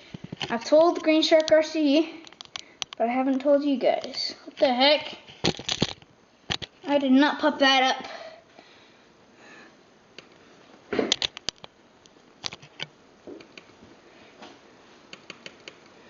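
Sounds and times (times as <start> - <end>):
clicks and taps handling computer: 11.1 - 11.7.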